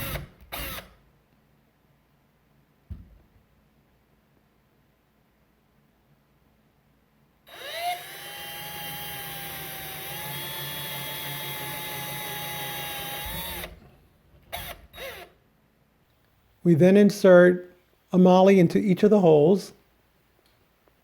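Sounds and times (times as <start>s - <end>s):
electric drill boring into wall: 0.0s - 1.0s, 7.5s - 13.9s, 14.5s - 15.4s.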